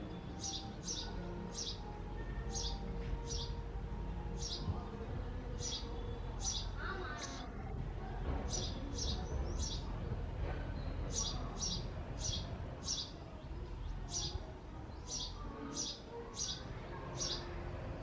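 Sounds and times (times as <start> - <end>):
sparrow chirping: 0.0 - 7.5, 8.4 - 10.2, 10.8 - 17.6
low background rumble: 0.0 - 15.7.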